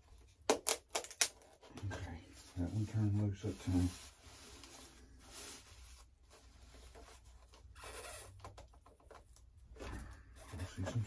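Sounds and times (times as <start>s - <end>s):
faint scratching of foam parts: 1.5s - 11.0s.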